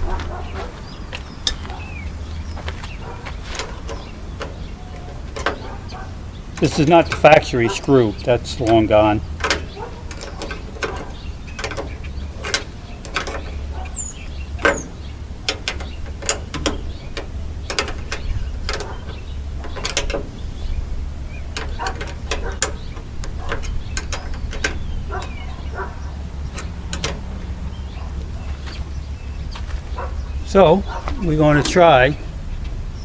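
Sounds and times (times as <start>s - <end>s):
steady low hum: 0.0s - 33.0s
hand tools clicking on metal: 1.4s - 1.8s, 2.6s - 20.4s, 21.3s - 28.8s.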